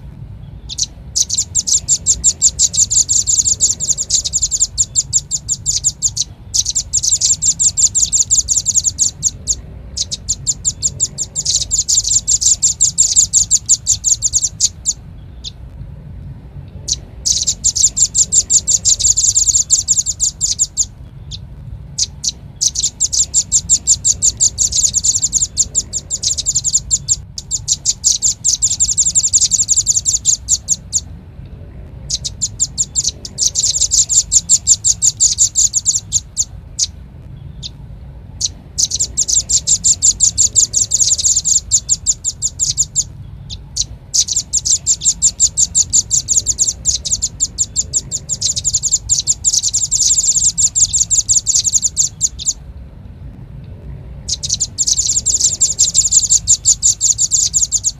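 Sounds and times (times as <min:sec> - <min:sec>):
bird calling in rapid trills: 0:00.0 - 0:15.7, 0:16.8 - 0:31.2, 0:31.9 - 0:52.7, 0:54.2 - 0:57.9
faint low hum: 0:00.0 - 0:57.9.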